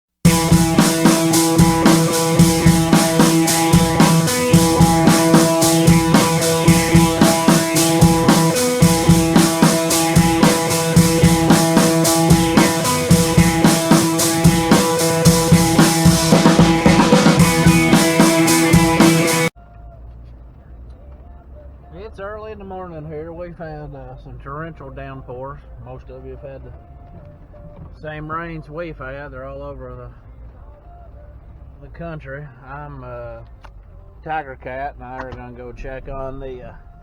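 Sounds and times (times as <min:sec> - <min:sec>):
rock music with drums and guitar: 0:00.3 - 0:19.5.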